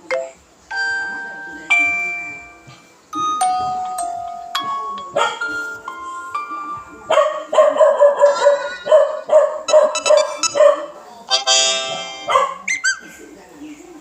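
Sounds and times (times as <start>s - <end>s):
phone notification tones: 0.1s - 7.1s, 8.3s - 10.7s, 11.3s - 13.0s.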